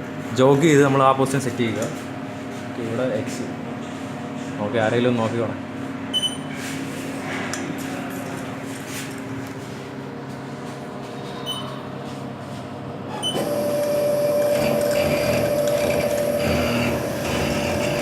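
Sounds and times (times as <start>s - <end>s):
short beeps: 6.1s - 6.5s
milling machine hum: 12.3s - 18.0s
spindle whine: 13.2s - 18.0s.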